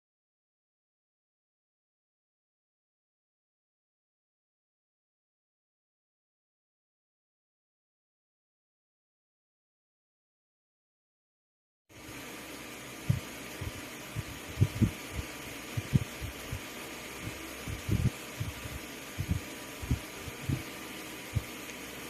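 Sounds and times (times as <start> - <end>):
hum and hiss: 11.9 - 22.0.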